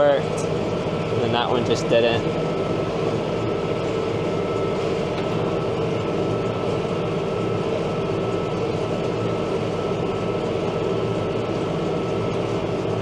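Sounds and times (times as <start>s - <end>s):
tractor and baler droning: 0.0s - 13.0s.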